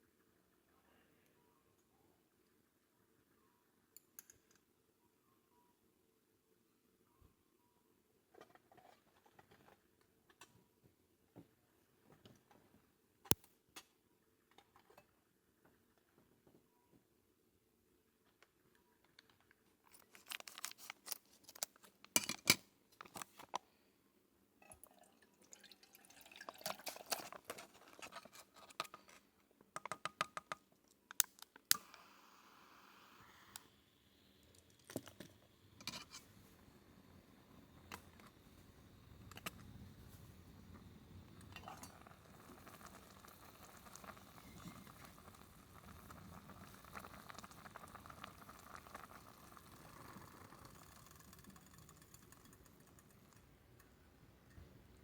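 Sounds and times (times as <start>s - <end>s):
faint hiss: 31.3s - 55.0s.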